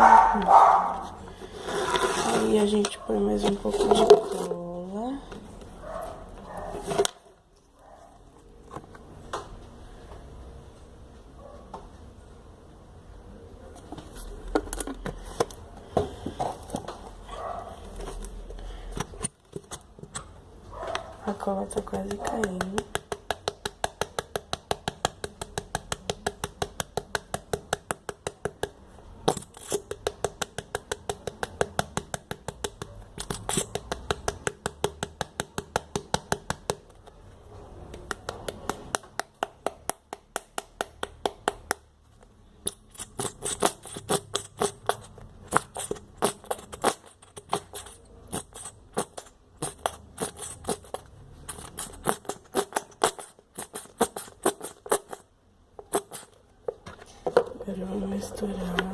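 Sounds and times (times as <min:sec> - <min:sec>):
utensil tapping pot while stirring: 0:21.7 - 0:37.2.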